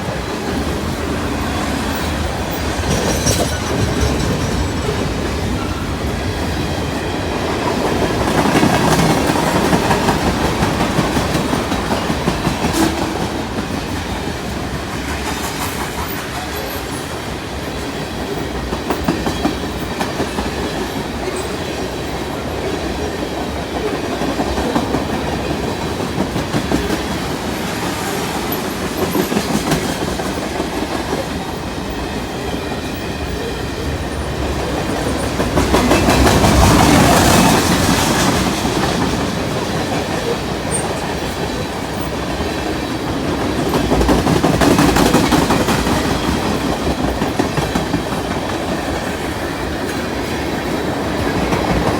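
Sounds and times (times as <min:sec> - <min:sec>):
wheels clicking over rail joints: 0:00.0 - 0:16.8
freight train cars rolling: 0:00.0 - 0:51.9.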